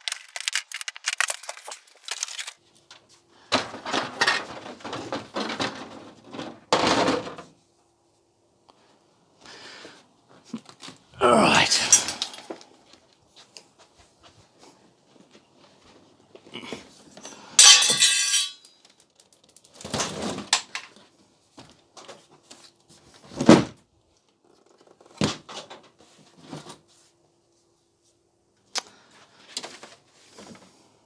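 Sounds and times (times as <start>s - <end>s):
clatter of hard objects: 0.0s - 2.6s, 3.5s - 7.5s, 11.8s - 12.6s, 17.6s - 21.0s.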